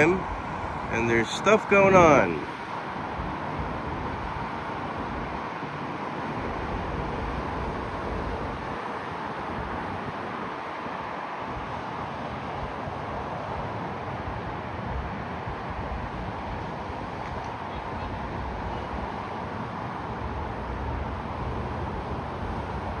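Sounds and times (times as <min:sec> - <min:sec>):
car road noise: 0:00.0 - 0:23.0.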